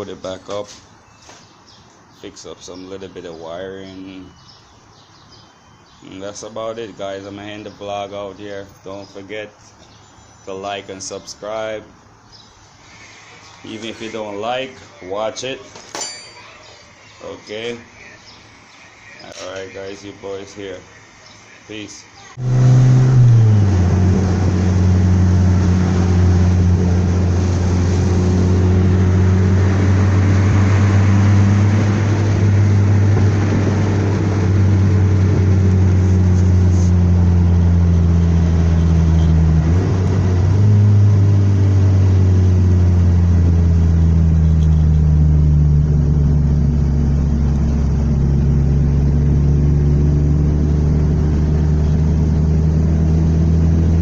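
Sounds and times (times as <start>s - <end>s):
car engine running: 22.4s - 54.0s.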